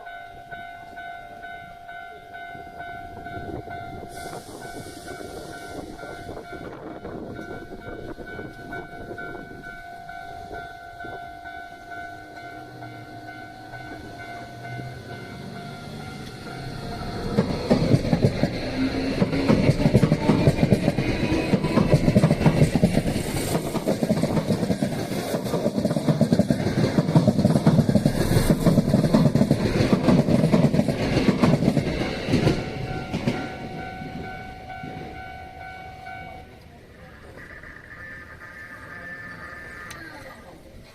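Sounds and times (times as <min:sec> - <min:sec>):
electric train passing: 0:00.0 - 0:40.9
level crossing bell ringing: 0:05.2 - 0:17.4, 0:31.9 - 0:36.7
train wheels clattering over rails: 0:13.7 - 0:35.0.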